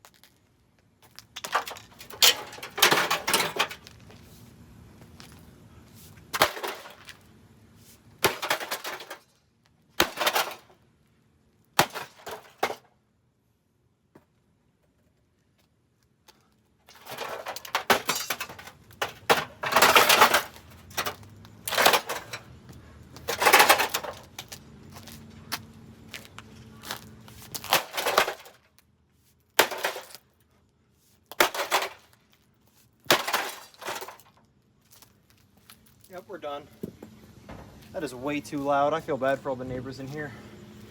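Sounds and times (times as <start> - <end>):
microwave oven being smashed: 1.4 - 3.9, 6.3 - 7.2, 8.2 - 9.3, 10.0 - 10.7, 11.8 - 12.8, 16.9 - 22.5, 23.2 - 24.4, 27.6 - 28.6, 29.6 - 30.2, 31.3 - 32.2, 33.1 - 34.3.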